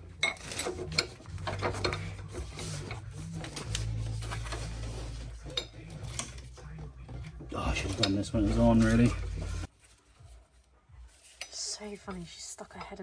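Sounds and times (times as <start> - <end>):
metallic clinks and scraping of tools: 0.0 - 9.7.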